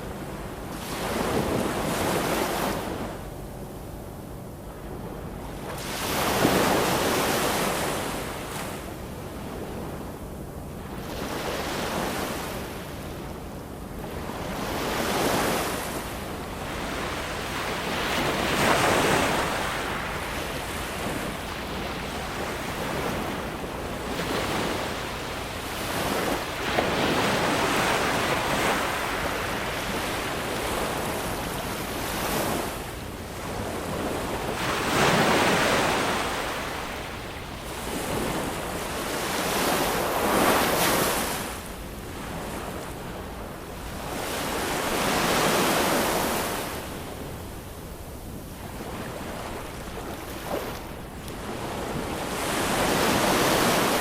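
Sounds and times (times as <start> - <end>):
ocean waves breaking: 0.0 - 3.2, 4.8 - 10.0, 10.9 - 54.0.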